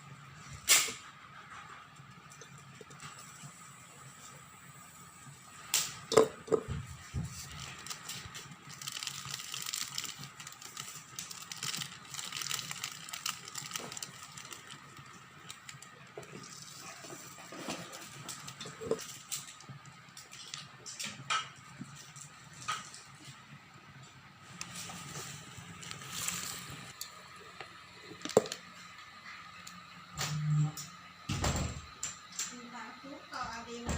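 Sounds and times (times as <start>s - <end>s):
rustling hiss: 24.5s - 27.0s.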